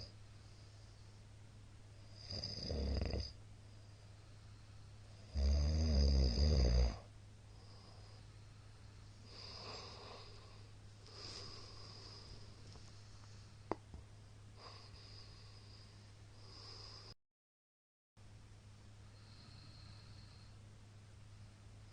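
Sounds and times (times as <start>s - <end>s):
steady low hum: 0.0s - 17.2s, 18.2s - 21.9s
man snoring loudly: 2.1s - 3.4s, 5.3s - 7.1s.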